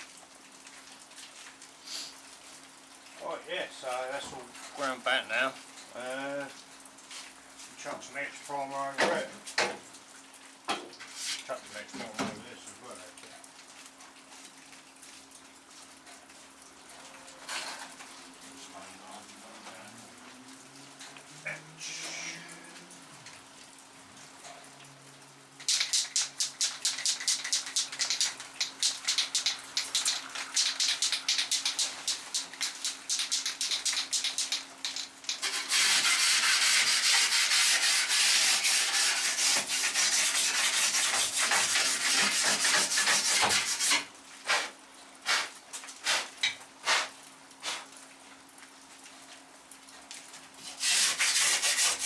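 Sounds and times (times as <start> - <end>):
aerosol can spraying: 25.7 - 37.6.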